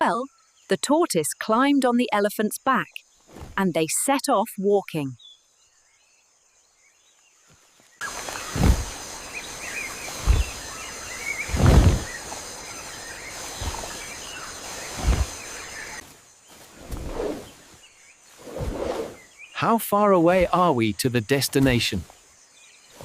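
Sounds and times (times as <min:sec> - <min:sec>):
birds chirping: 0:00.0 - 0:23.0
faint high insect drone: 0:00.0 - 0:23.0
heavy low footfall thuds: 0:08.4 - 0:09.0, 0:10.2 - 0:10.6, 0:11.5 - 0:12.2.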